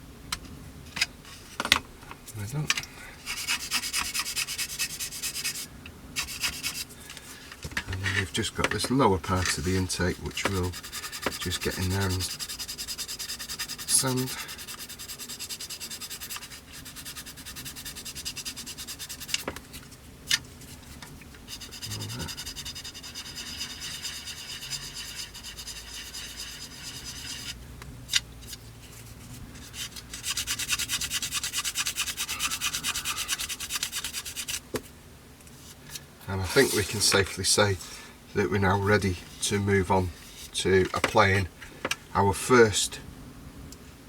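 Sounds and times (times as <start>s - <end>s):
sandpaper scraping on plastic: 3.2s - 7.0s, 9.2s - 19.5s, 21.5s - 27.6s, 28.4s - 34.6s, 36.4s - 37.4s.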